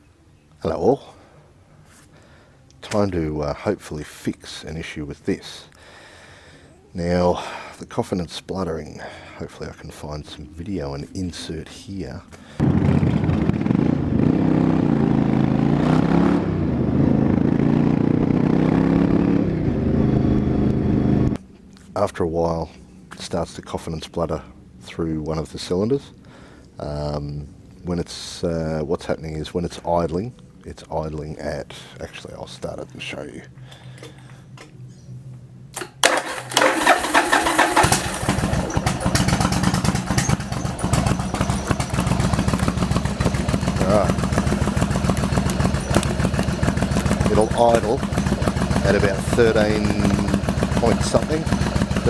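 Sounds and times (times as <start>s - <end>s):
motorcycle engine running: 12.6s - 21.4s, 36.2s - 52.0s
electric starter cranking: 35.8s - 52.0s
engine coughing and spluttering: 36.0s - 52.0s.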